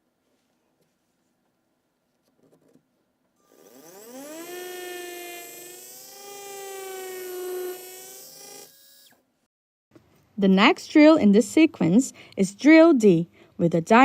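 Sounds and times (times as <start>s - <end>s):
dental drill motor whine: 3.4s - 9.2s.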